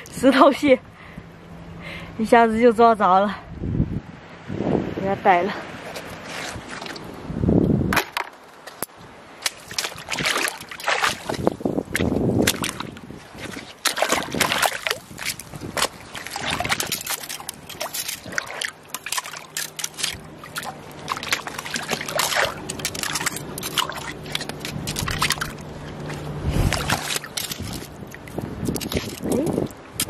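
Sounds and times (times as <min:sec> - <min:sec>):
seawater splashing among rocks: 0:05.7 - 0:07.2, 0:08.0 - 0:30.0
low hum: 0:19.8 - 0:30.0.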